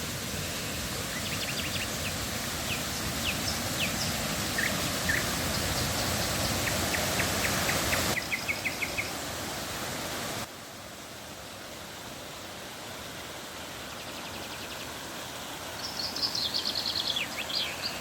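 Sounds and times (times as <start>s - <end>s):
flowing river water: 0.0s - 18.0s
birds chirping: 1.0s - 9.2s.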